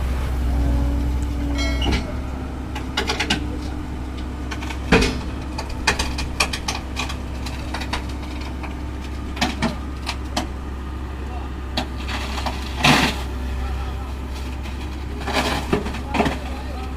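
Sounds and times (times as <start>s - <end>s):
metallic clanks and knocks: 0.0s - 10.6s
diesel engine running: 0.0s - 16.9s.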